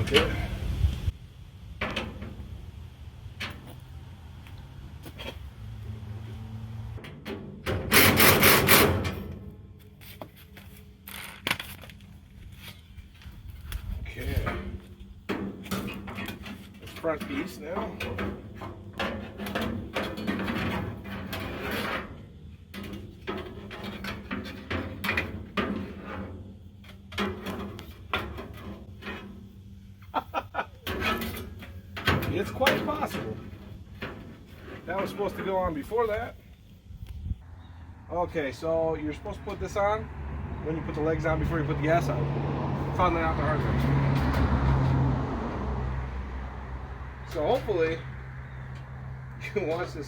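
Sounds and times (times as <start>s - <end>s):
loud scraping rasp of metal parts: 7.7s - 9.4s, 15.6s - 29.5s.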